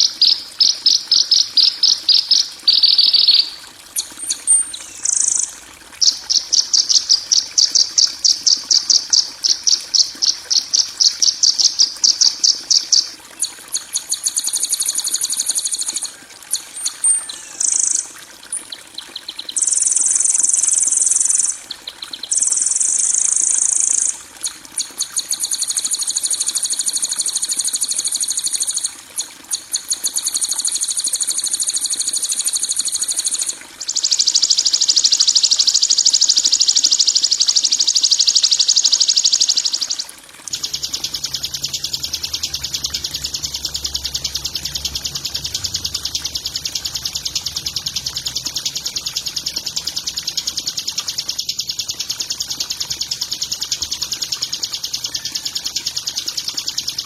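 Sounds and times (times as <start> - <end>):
recorded buzzy bird trills: 0.0 - 57.0
bird ticks and chips: 19.2 - 24.2, 32.6 - 57.0.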